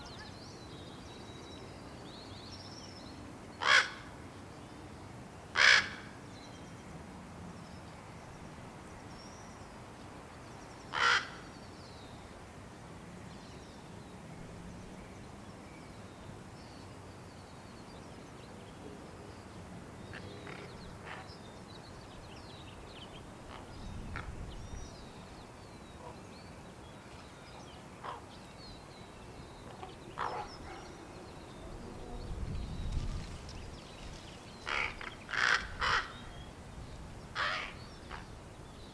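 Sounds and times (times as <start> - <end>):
young ravens harsh begging calls: 3.6 - 4.0, 5.6 - 6.1, 10.9 - 11.4, 34.6 - 36.3, 37.4 - 38.3.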